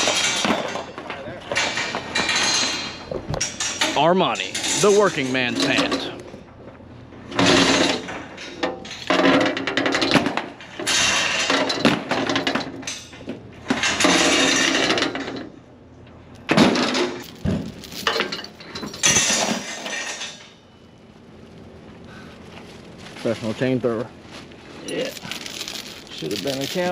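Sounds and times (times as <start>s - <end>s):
steel chains clanking: 0.0s - 6.2s, 7.3s - 15.6s, 16.8s - 20.6s, 24.8s - 26.9s.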